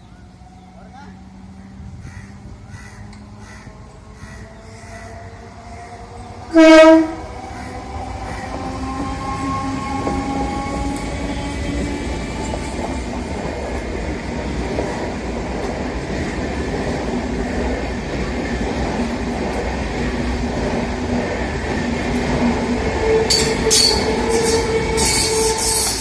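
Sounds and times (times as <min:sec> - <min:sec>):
train rumbling on rails: 0:00.0 - 0:26.0
high squealing bursts: 0:22.9 - 0:26.0.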